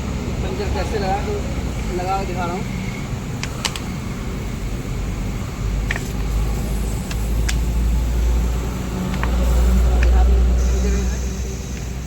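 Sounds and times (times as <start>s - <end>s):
tools clicking and tapping: 9.1s - 10.2s.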